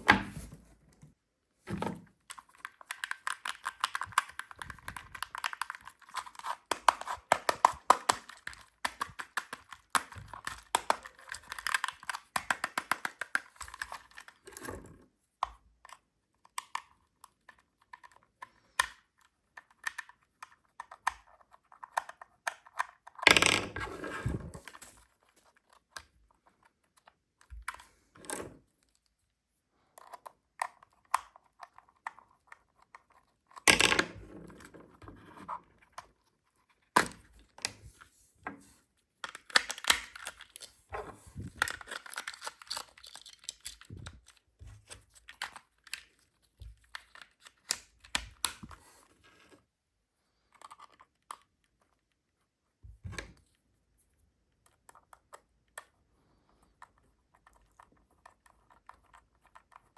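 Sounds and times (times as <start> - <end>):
crinkling plastic and cardboard: 34.9 - 49.6.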